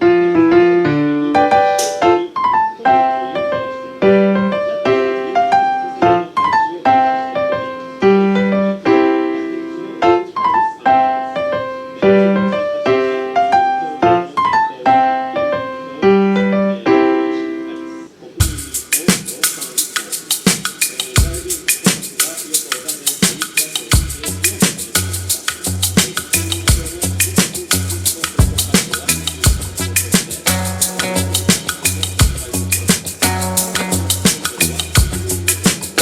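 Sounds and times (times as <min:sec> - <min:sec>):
calm piano music: 0:00.0 - 0:22.8, 0:23.5 - 0:36.0.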